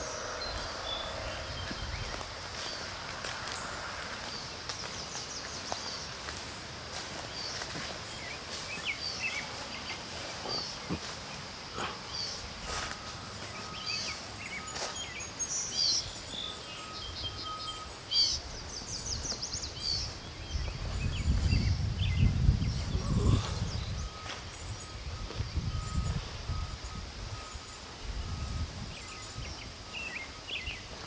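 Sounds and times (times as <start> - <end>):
low rumble: 0.0 - 4.4
songbirds chirping: 0.0 - 31.0.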